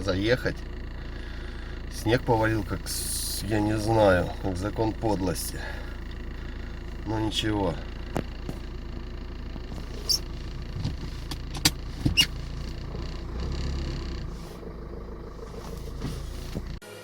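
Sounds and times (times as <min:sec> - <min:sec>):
truck diesel engine rumbling: 0:00.0 - 0:16.9.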